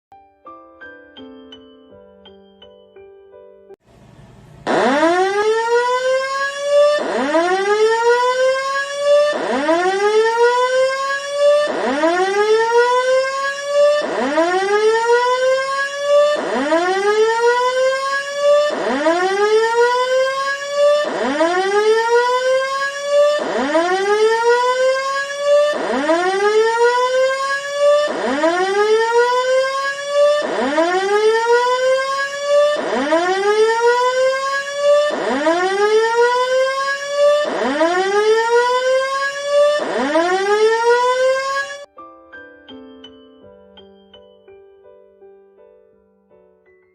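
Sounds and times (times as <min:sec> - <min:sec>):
buzzy electronic siren wail: 0:04.6 - 0:41.9.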